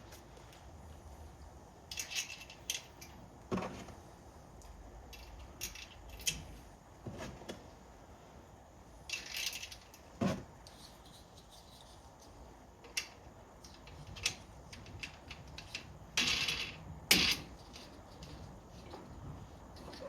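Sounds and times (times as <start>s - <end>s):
metal hardware clicking and rattling: 1.9s - 3.2s, 5.1s - 6.6s, 9.1s - 19.0s.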